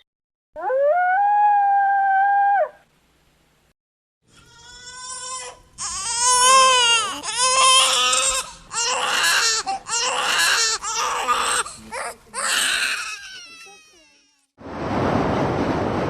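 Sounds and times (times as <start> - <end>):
infant crying: 4.3 - 14.5.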